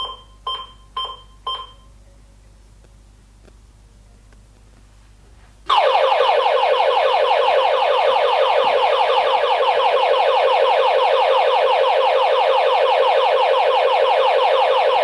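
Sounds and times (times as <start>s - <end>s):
alarm siren warbling: 5.7s - 15.0s.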